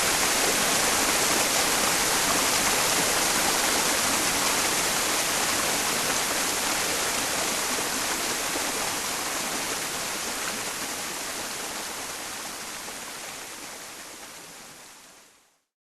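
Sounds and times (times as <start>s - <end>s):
stream water rushing: 0.0s - 15.1s
white noise hiss: 0.0s - 15.7s.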